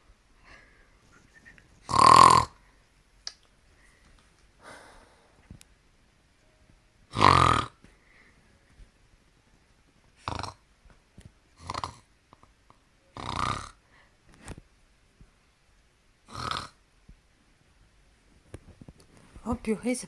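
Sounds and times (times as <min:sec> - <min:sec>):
person snoring: 0:01.9 - 0:02.6, 0:07.1 - 0:07.8, 0:10.2 - 0:10.6, 0:11.6 - 0:12.1, 0:13.1 - 0:13.9, 0:16.3 - 0:16.8.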